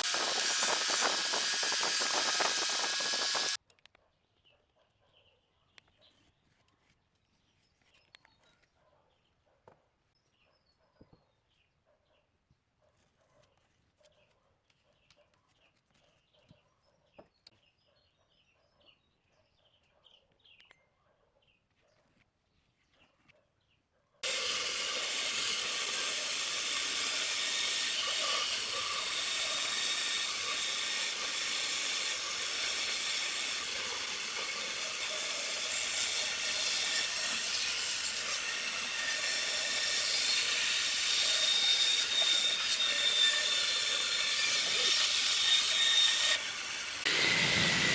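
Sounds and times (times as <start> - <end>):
woodworking power tool hissing: 0.0 - 3.6, 24.2 - 47.9.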